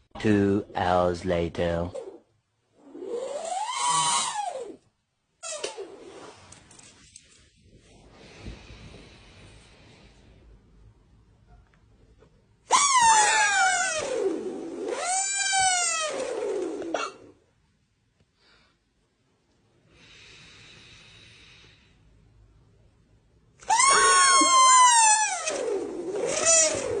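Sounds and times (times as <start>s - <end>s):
high wailing sliding in pitch: 23.7s - 27.0s.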